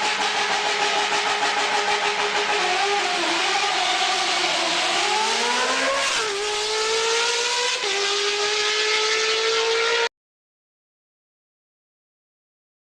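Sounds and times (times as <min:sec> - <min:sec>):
motorcycle engine accelerating: 0:00.0 - 0:10.1.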